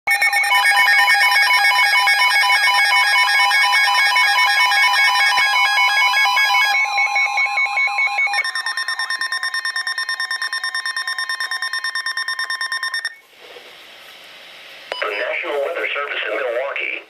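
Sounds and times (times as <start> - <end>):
electronic alarm tones beeping: 0.1 - 13.2, 14.9 - 15.4.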